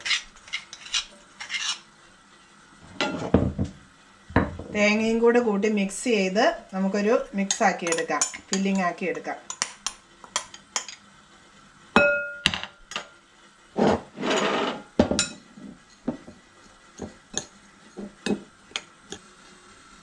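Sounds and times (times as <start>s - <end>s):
spoon scraping a bowl: 0.0s - 1.9s, 13.8s - 18.5s
spoon clinking: 7.5s - 8.9s.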